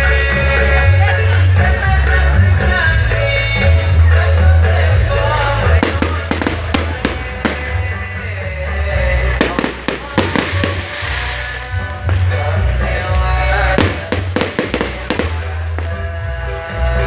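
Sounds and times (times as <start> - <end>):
music with heavy bass: 0.0 - 17.0
fireworks banging: 5.6 - 12.8, 13.4 - 16.2.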